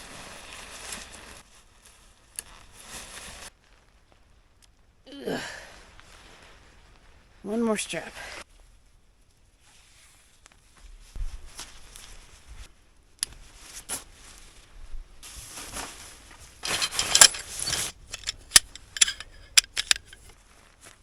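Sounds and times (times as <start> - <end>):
webbing rustling and scraping: 13.3 - 20.4
metallic clicks and jingles: 16.6 - 20.3.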